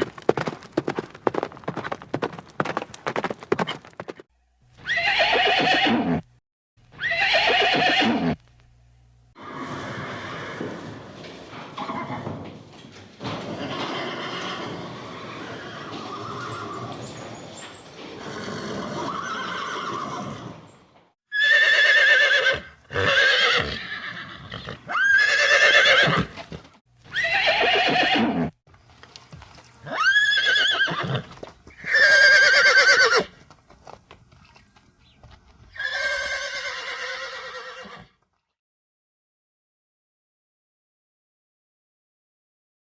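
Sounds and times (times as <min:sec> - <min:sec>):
horse whinnying: 0:04.8 - 0:06.3, 0:07.0 - 0:08.4, 0:09.4 - 0:11.0, 0:13.5 - 0:17.3, 0:18.0 - 0:20.7, 0:21.3 - 0:28.6, 0:29.8 - 0:33.3, 0:35.7 - 0:38.2.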